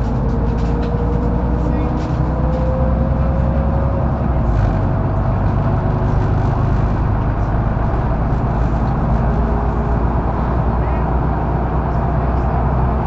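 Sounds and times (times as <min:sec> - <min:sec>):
bus engine and road noise: 0:00.0 - 0:13.0.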